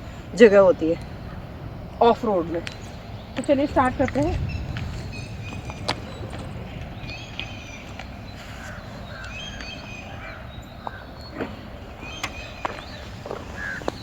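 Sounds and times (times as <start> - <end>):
low steady rumble: 0.0 - 14.0
small birds chirping: 0.0 - 14.0
crows cawing: 1.1 - 1.8, 5.1 - 14.0.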